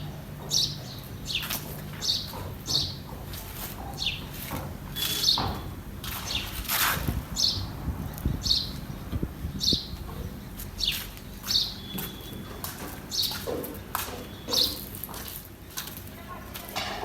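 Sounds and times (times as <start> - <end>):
bird chirping: 5.0 - 5.6, 7.4 - 13.4.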